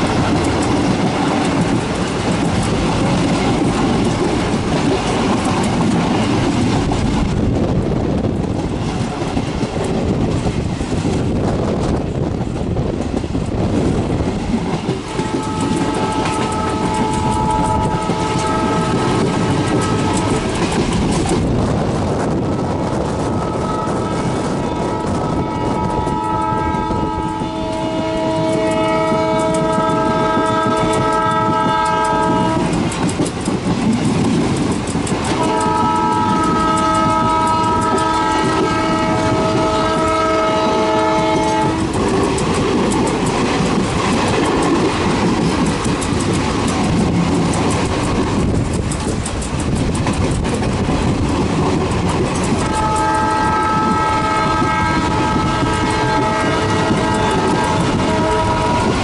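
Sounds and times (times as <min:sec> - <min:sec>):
train running on rails: 0:00.0 - 0:59.0
locomotive horn blasts: 0:15.1 - 0:20.7, 0:23.3 - 0:32.8, 0:35.4 - 0:42.0, 0:52.6 - 0:59.0.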